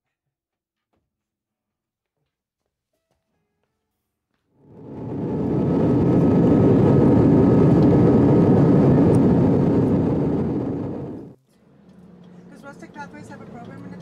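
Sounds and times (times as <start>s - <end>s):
jet engines rumbling: 4.6s - 11.4s.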